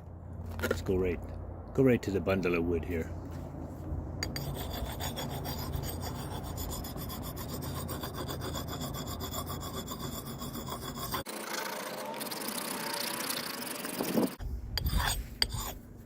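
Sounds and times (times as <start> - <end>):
sharpening stone scraping steel: 4.2 - 11.3, 12.2 - 15.8.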